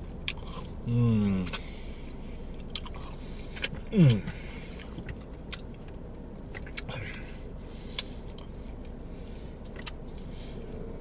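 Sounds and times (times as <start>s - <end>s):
low steady rumble: 0.0s - 11.0s
mouth clicks and chewing smacks: 0.2s - 0.8s, 1.5s - 5.9s, 6.5s - 6.9s, 7.9s - 8.5s, 9.6s - 10.1s.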